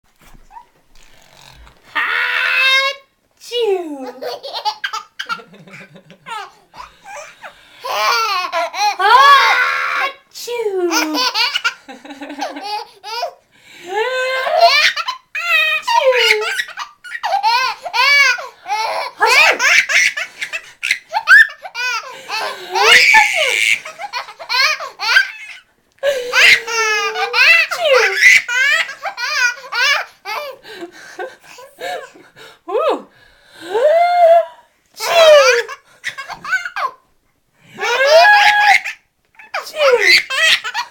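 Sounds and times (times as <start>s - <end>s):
baby laughing: 4.1s - 9.1s, 10.9s - 13.4s, 14.4s - 30.6s, 35.0s - 37.0s, 37.8s - 40.9s.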